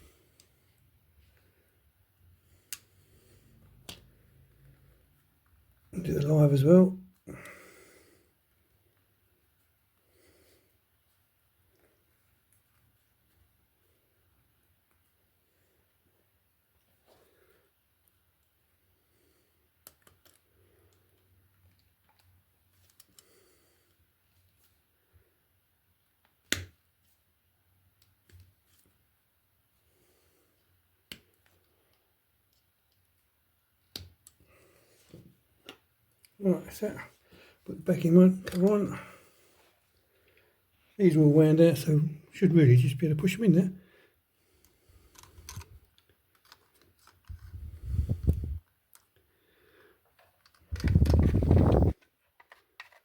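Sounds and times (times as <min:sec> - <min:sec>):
wires being handled: 0:31.0 - 0:39.9, 0:44.6 - 0:49.2, 0:50.0 - 0:53.0.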